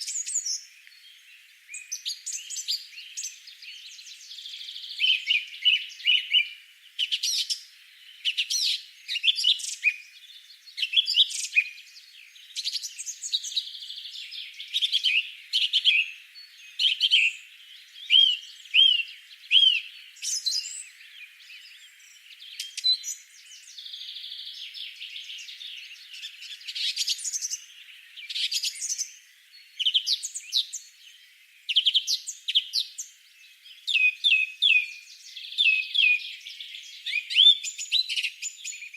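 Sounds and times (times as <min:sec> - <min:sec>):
songbirds chirping and singing: 0:00.0 - 0:38.9.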